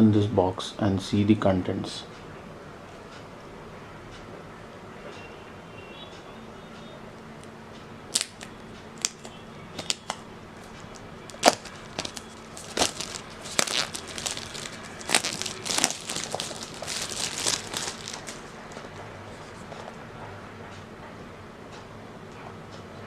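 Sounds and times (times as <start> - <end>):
packaging clicks and snaps: 8.1 - 18.8
packaging crinkling and crackling: 8.1 - 20.0.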